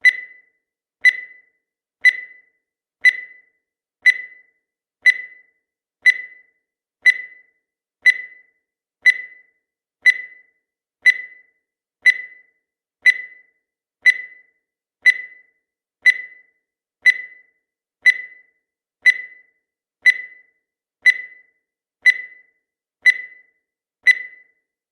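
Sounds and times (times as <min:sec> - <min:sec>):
short high timer beeps: 0:04.1 - 0:04.5, 0:05.1 - 0:05.5, 0:06.1 - 0:06.5, 0:07.1 - 0:07.5, 0:08.1 - 0:08.5, 0:24.1 - 0:24.6.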